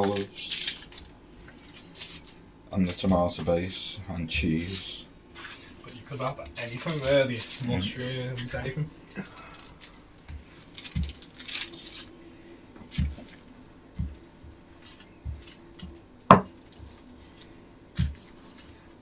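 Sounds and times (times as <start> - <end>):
dishes and utensils knocking: 16.3 - 16.6.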